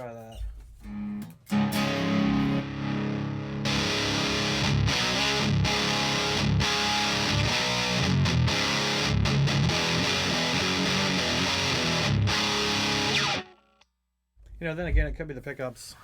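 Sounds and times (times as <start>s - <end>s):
distorted electric guitar riffing: 0.9s - 13.6s.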